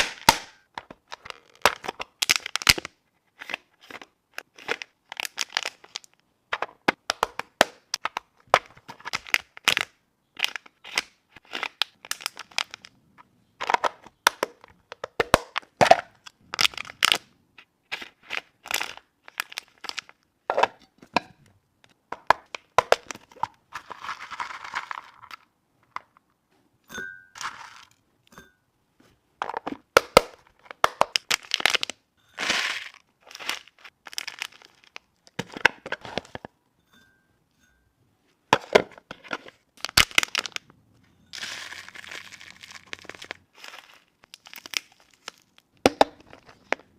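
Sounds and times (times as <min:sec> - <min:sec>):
snack packaging crinkling: 0:01.1 - 0:06.2, 0:07.8 - 0:13.0, 0:16.4 - 0:20.2, 0:30.0 - 0:35.4, 0:39.8 - 0:40.7, 0:41.4 - 0:46.9.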